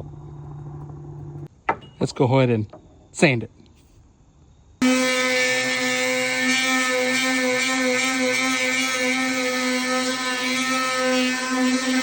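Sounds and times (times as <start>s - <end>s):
electric sander buzzing: 4.8s - 12.0s.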